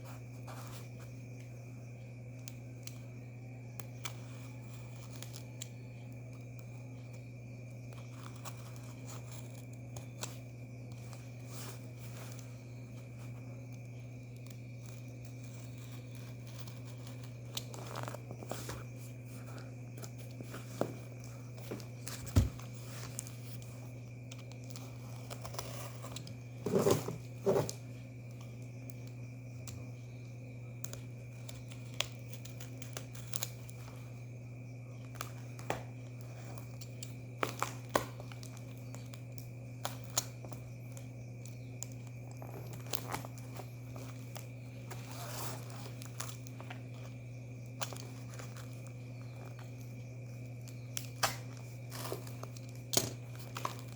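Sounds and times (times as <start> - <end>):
low electrical hum: 0.0 - 53.9
packaging crinkling and tearing: 51.0 - 53.9.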